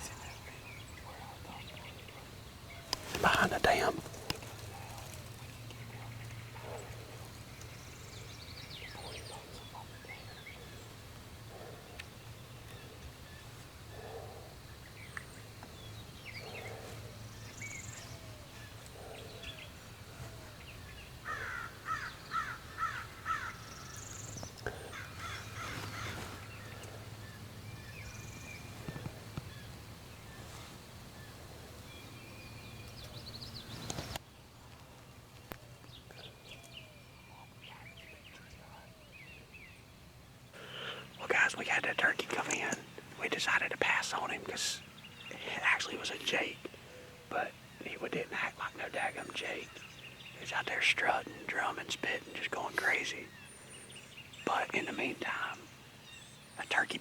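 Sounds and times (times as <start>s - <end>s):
birds chirping: 0.0s - 57.0s
crow cawing: 21.2s - 23.7s, 24.9s - 26.3s.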